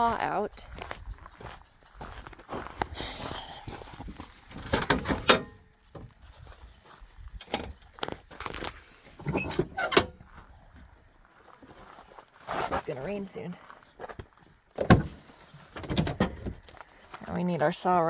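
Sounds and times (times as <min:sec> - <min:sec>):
car door and latch clunks: 0:04.6 - 0:06.1, 0:09.2 - 0:10.2, 0:14.8 - 0:15.2, 0:15.8 - 0:16.6.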